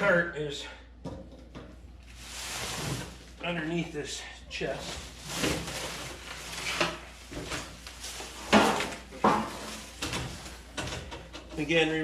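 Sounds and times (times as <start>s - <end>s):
tool cart parts clunking and scraping: 4.6s - 12.0s.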